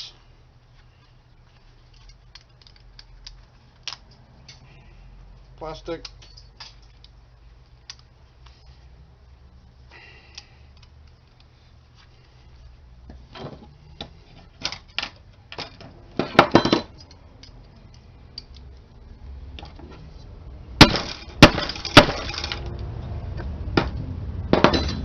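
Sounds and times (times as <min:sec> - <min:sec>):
small parts clicking and clattering: 0:00.7 - 0:04.9, 0:05.7 - 0:08.7, 0:09.9 - 0:12.3, 0:13.1 - 0:19.9, 0:20.8 - 0:22.9.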